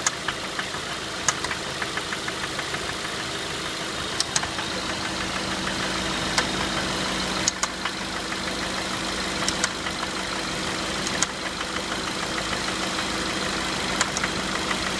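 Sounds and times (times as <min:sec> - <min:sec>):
car engine idling: 0:00.0 - 0:14.9
sharp clicks: 0:01.2 - 0:01.6, 0:04.1 - 0:04.6, 0:07.4 - 0:07.8, 0:09.4 - 0:09.8, 0:11.0 - 0:11.4, 0:14.0 - 0:14.4.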